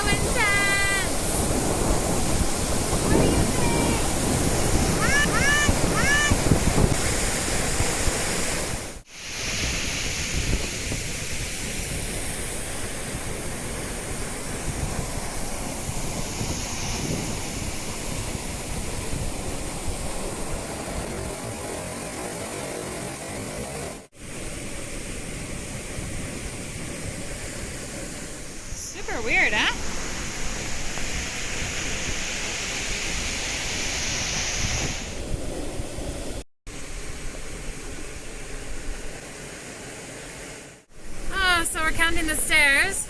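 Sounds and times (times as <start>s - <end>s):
wind buffeting microphone: 0.0s - 22.0s, 24.2s - 39.2s
waterfall rushing: 0.0s - 23.2s.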